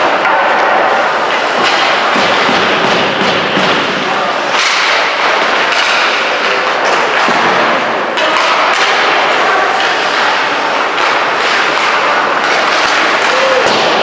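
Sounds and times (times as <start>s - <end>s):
skates scraping ice: 0.0s - 14.0s
sticks and puck clacking: 0.0s - 14.0s.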